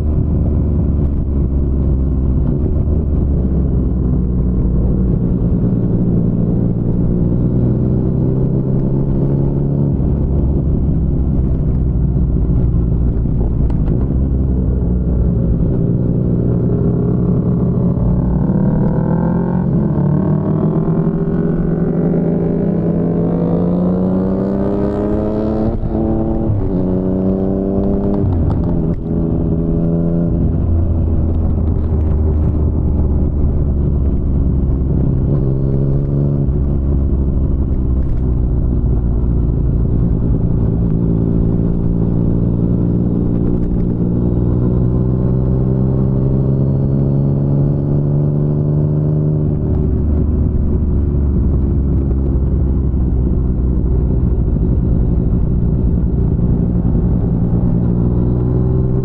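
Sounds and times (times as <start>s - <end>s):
motorcycle engine accelerating: 0.0s - 59.0s.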